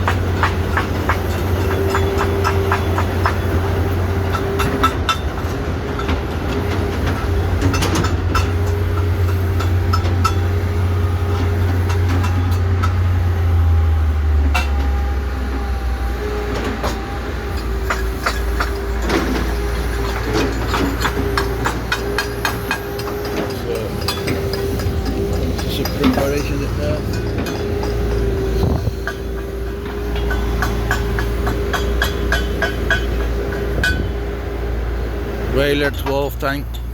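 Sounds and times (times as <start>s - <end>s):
low mechanical drone: 0.0s - 36.9s
sharp clicks and knocks: 17.6s - 34.1s.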